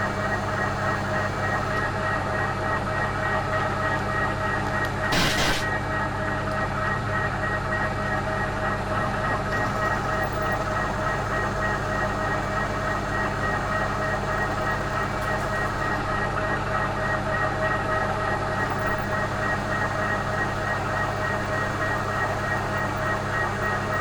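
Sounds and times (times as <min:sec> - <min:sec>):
milling machine running: 0:04.6 - 0:05.8.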